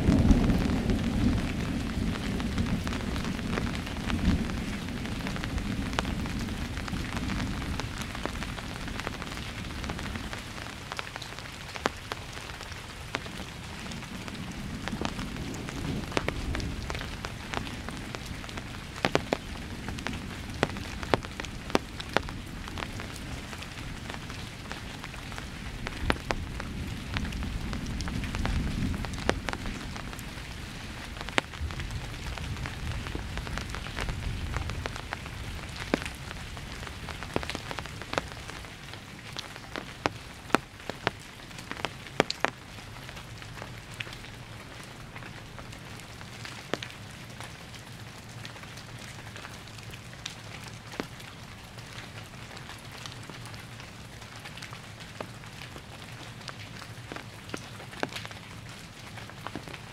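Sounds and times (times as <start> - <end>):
distant thunder rumbling: 0.0 - 10.4, 13.6 - 38.7
raindrops ticking on surfaces: 0.0 - 59.9
steady rain: 0.0 - 59.9.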